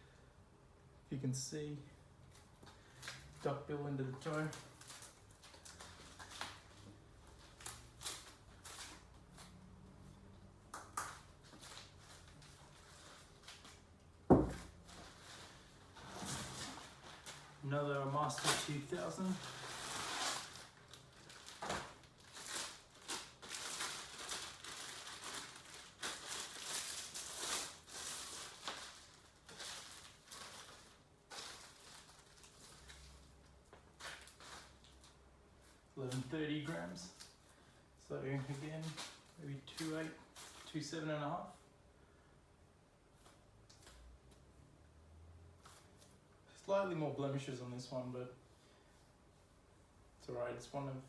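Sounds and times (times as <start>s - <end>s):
quiet room hum: 0.0s - 51.0s
soft handling knocks and rustles: 14.3s - 15.4s
packaging crinkling: 18.2s - 35.2s.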